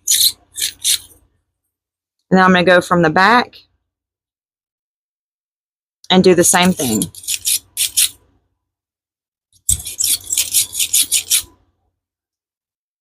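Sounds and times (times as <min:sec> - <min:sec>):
hand tool rasping resin: 0:00.0 - 0:01.2, 0:06.7 - 0:08.2, 0:09.6 - 0:11.6.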